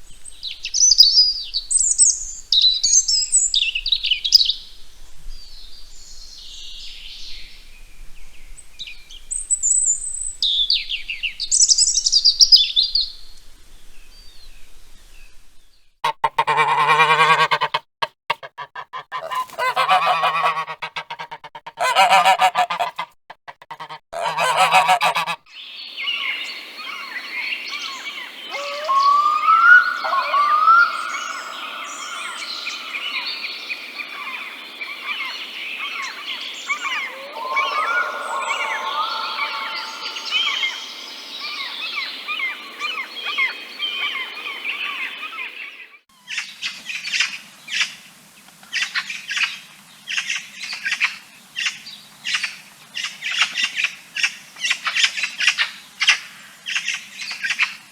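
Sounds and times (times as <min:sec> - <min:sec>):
goose-like honks: 0:16.0 - 0:25.4
flock of birds calling: 0:19.0 - 0:23.0, 0:23.7 - 0:25.4, 0:26.0 - 0:45.8
bird squawks and chirps: 0:19.1 - 0:23.0, 0:28.5 - 0:33.2, 0:36.7 - 0:44.2.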